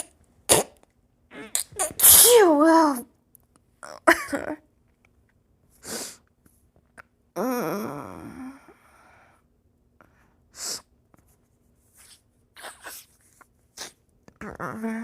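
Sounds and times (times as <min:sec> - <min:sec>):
stifled sneeze: 0:00.0 - 0:02.6.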